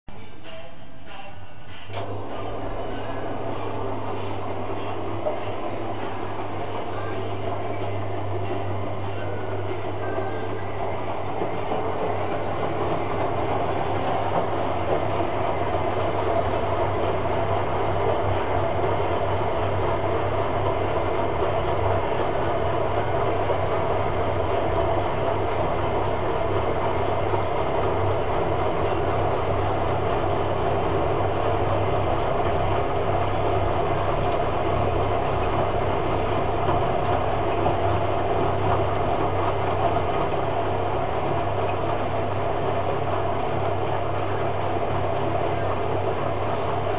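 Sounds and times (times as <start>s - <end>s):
washing machine running: 0.1s - 46.9s.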